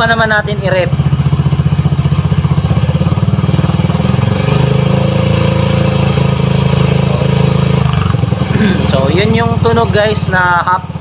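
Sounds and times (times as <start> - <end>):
scooter engine idling and revving: 0.0 - 11.0.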